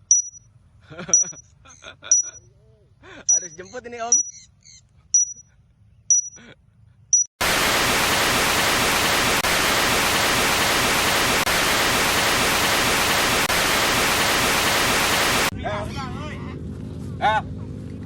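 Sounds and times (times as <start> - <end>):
short high chirps: 0.0 - 0.4, 1.2 - 1.4, 3.3 - 4.5, 5.2 - 5.5, 6.1 - 6.4
static hiss: 7.4 - 15.5.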